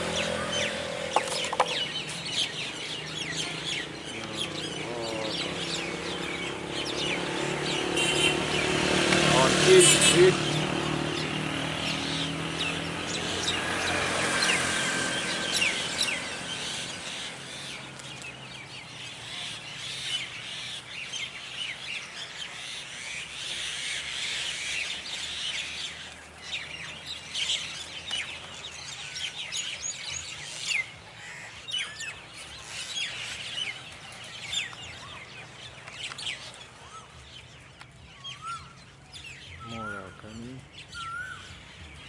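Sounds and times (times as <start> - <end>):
passing vehicle engine: 0.0 - 21.9
flock of birds chirping: 0.0 - 42.0.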